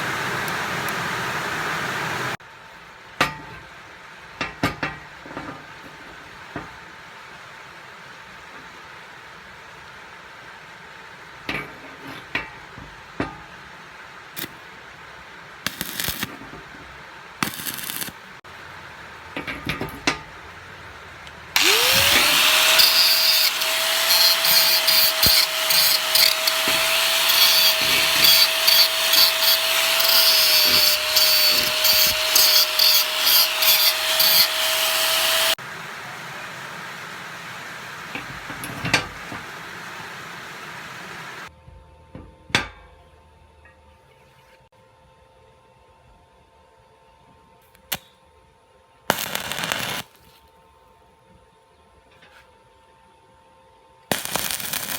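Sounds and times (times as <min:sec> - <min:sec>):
electric power tool whining: 0:00.0 - 0:02.4, 0:21.3 - 0:41.5, 0:49.1 - 0:50.1, 0:54.1 - 0:54.9.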